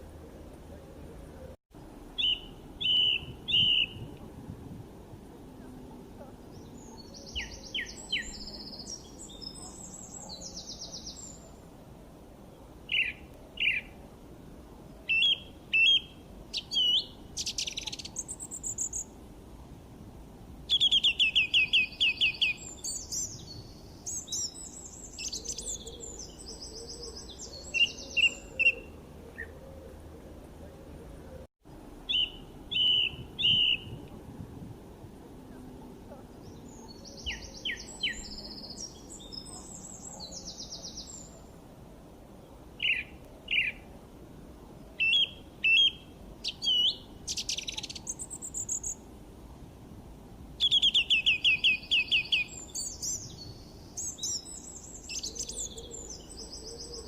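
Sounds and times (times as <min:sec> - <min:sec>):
faint background hiss: 0:00.0 - 0:57.0
small birds chirping: 0:02.2 - 0:04.1, 0:05.4 - 0:11.6, 0:12.5 - 0:14.0, 0:15.0 - 0:19.1, 0:20.7 - 0:29.6, 0:32.1 - 0:34.1, 0:35.6 - 0:41.5, 0:42.8 - 0:43.8, 0:45.0 - 0:49.0, 0:50.6 - 0:57.0.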